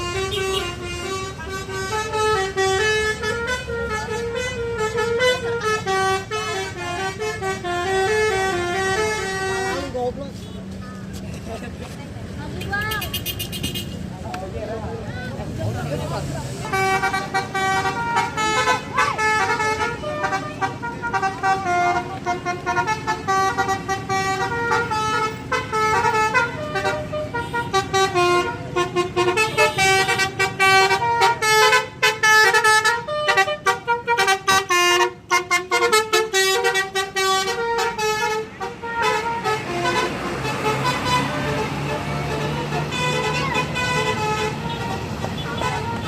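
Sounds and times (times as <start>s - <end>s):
musical air horn tune: 16.6s - 46.0s.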